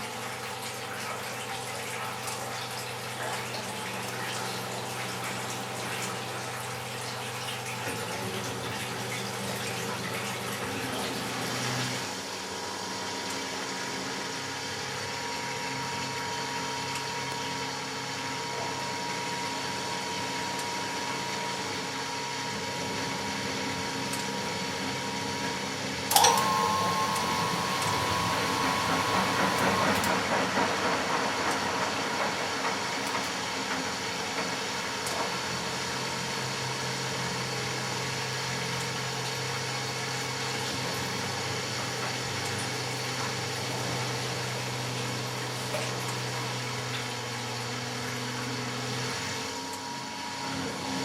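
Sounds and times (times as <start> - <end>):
washing machine humming: 0.0 - 51.0
water flowing: 26.1 - 31.6.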